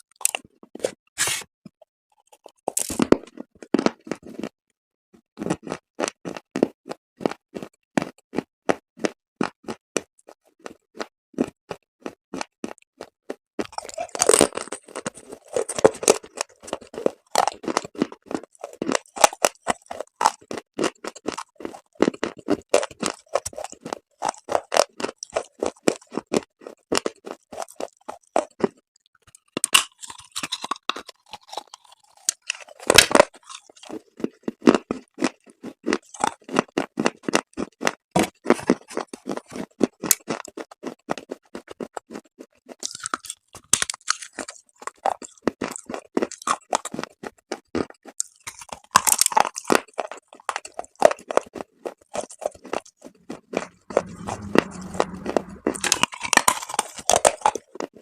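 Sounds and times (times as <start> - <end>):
brittle crunching and chewing: 0.0 - 1.0, 2.1 - 4.6, 5.4 - 58.0.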